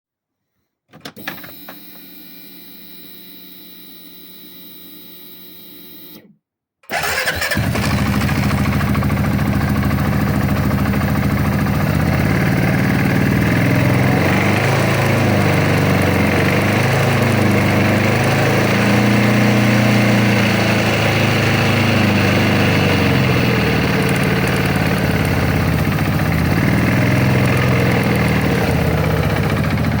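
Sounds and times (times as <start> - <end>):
engine running loudly: 7.0 - 30.0.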